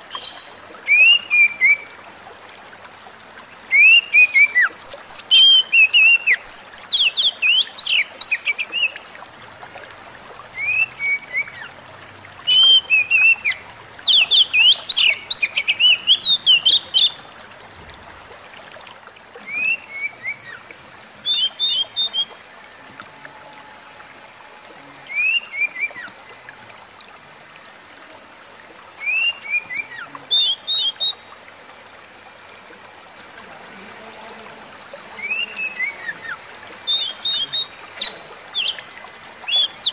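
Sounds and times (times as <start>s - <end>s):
bird singing whistled notes: 0.1s - 2.0s, 3.7s - 8.9s, 10.6s - 17.2s, 19.4s - 20.6s, 21.2s - 22.4s, 25.1s - 26.1s, 29.0s - 31.3s, 35.2s - 39.9s.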